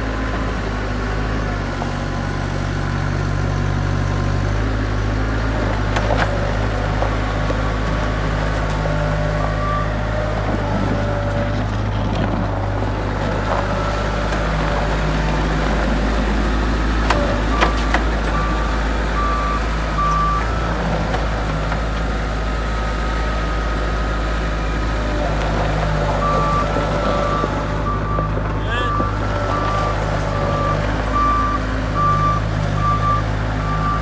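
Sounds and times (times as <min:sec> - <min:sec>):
diesel engine running: 0:00.0 - 0:34.0
backup alarm beeping: 0:26.2 - 0:34.0.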